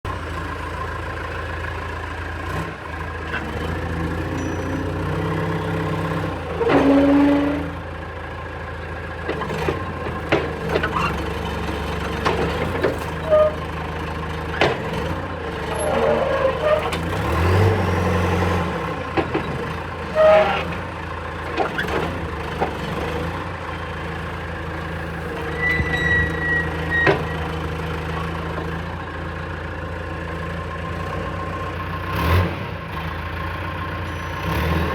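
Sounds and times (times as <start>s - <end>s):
diesel engine running: 0.1s - 34.9s
metallic clanks: 4.3s - 5.4s
machine squeaks: 4.4s - 5.6s, 13.2s - 13.6s, 15.7s - 17.0s, 20.2s - 20.7s, 25.4s - 27.5s.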